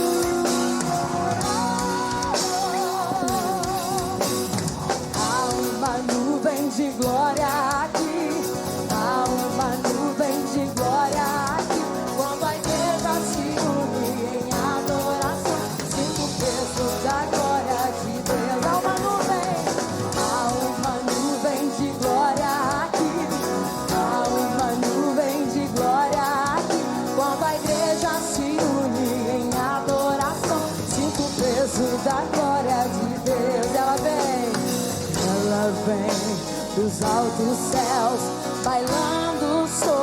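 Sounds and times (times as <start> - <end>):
gospel band playing: 0.0 - 40.0
singing: 0.0 - 40.0.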